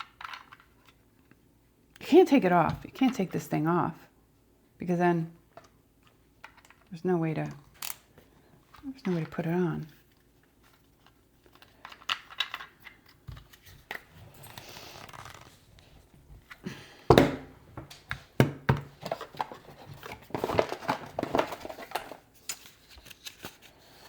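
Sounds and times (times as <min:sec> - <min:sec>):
plastic parts clicking and rattling: 0:00.0 - 0:01.1, 0:05.6 - 0:15.5, 0:16.5 - 0:24.0
rustling: 0:09.9 - 0:18.1.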